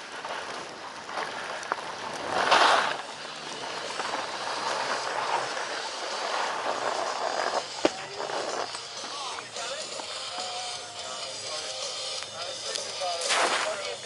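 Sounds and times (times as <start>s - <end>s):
ski scrape: 0.0s - 9.3s, 13.2s - 14.0s
skis hissing over snow: 0.0s - 9.7s, 13.1s - 14.0s.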